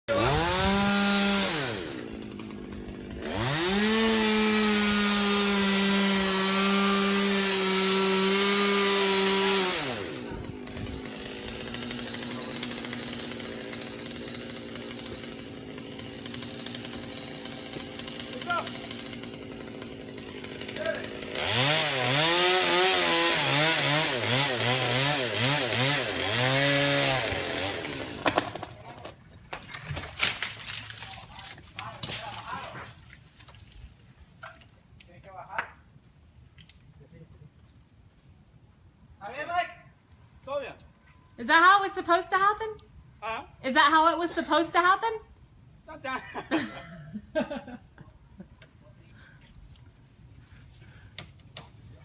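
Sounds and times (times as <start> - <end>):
chainsaw engine revving: 0.1 - 28.8
wood cracking: 26.2 - 35.9.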